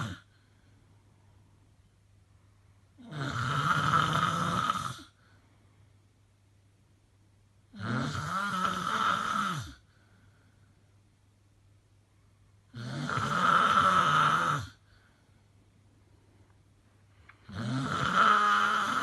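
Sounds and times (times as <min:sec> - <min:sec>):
person snoring loudly: 0:00.0 - 0:00.3, 0:03.0 - 0:05.2, 0:07.7 - 0:09.8, 0:12.7 - 0:14.8, 0:17.4 - 0:19.0.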